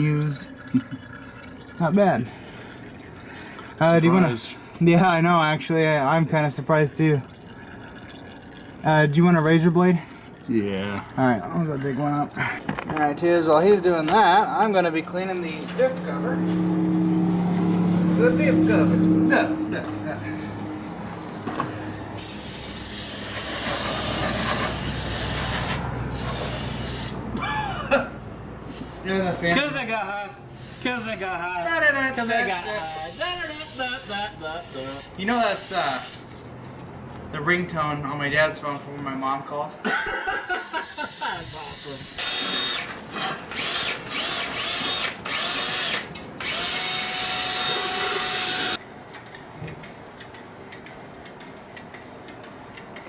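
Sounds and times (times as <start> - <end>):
aerosol can spraying: 22.2 - 27.2, 28.7 - 29.0, 30.6 - 31.2
power tool whining: 41.2 - 48.8.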